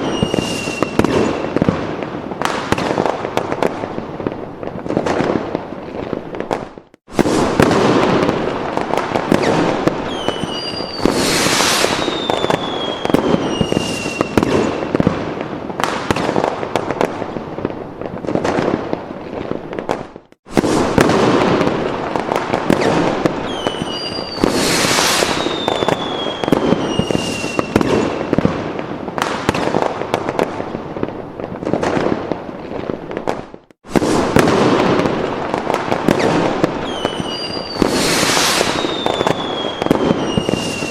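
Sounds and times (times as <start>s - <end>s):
fireworks whistles gliding down: 0.0s - 4.0s, 6.0s - 15.1s, 20.5s - 28.5s, 33.2s - 40.9s
fireworks crackling and popping: 0.0s - 40.9s.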